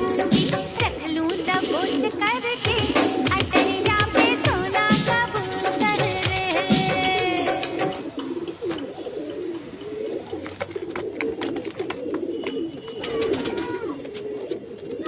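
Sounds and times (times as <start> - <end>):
background music: 0.0 - 8.0
pigeons cooing: 0.0 - 15.0.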